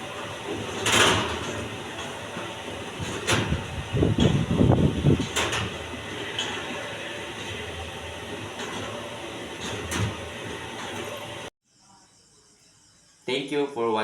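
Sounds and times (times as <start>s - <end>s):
rattling clatter: 0.1s - 7.7s.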